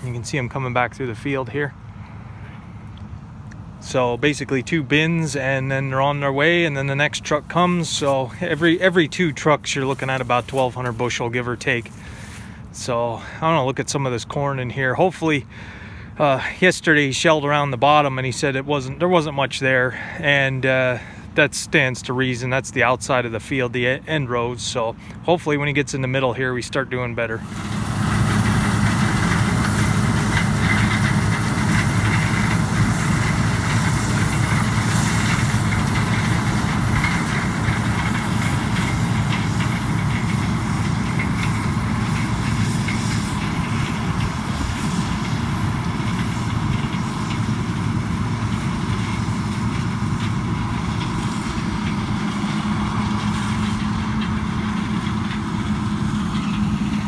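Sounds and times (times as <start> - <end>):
diesel engine hum: 0.0 - 57.0
mechanical rush: 27.4 - 57.0.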